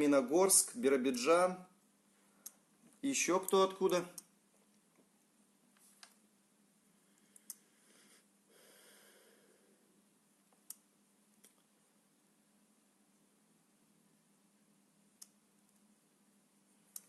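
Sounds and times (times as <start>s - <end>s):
faint steady hum: 0.0s - 17.0s
soft breath-like noise: 6.8s - 10.1s
faint clicks: 7.2s - 7.6s.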